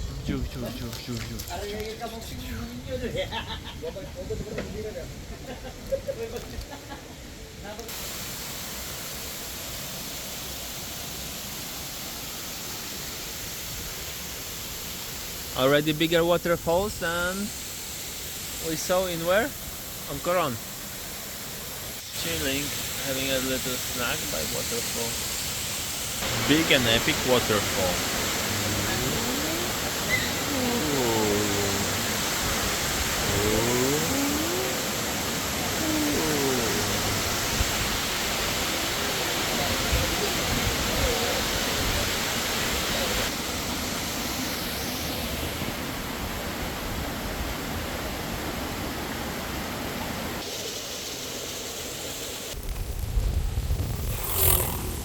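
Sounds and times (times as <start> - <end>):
waterfall rushing: 7.9 - 51.2
rising sliding pitched sounds: 26.3 - 38.1.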